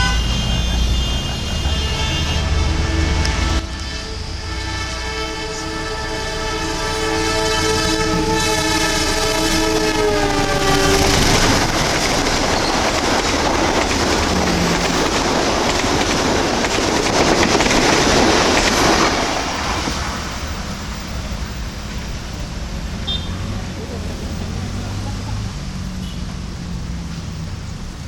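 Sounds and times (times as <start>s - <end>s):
locomotive air horn: 0.0s - 21.0s, 23.0s - 23.6s
train rumbling past: 0.0s - 28.0s
wheel clatter on rails: 8.4s - 22.4s.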